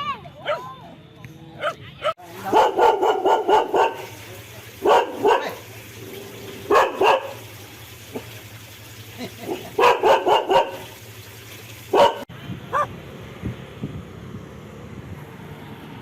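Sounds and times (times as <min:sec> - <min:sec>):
dog barking: 0:01.6 - 0:04.1, 0:04.8 - 0:05.6, 0:06.7 - 0:07.4, 0:09.5 - 0:11.0, 0:11.9 - 0:12.9.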